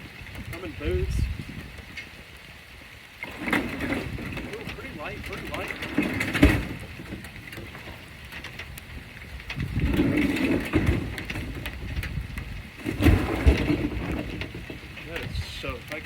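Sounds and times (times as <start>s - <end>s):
rain: 0.0s - 16.0s
refrigerator bumping and scraping: 3.3s - 6.9s, 12.8s - 15.4s.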